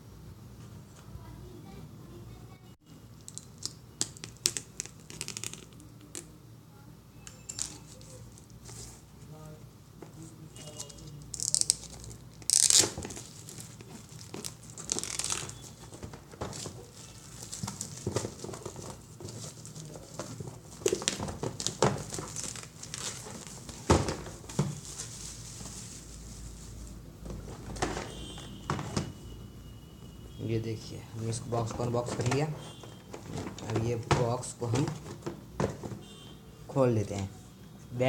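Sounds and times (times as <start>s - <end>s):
packaging crinkling and tearing: 11.4s - 23.9s.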